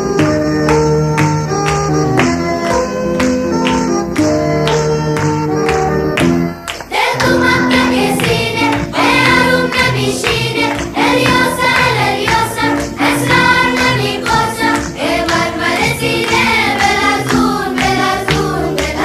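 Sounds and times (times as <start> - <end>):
song with group vocals: 6.8 - 19.0.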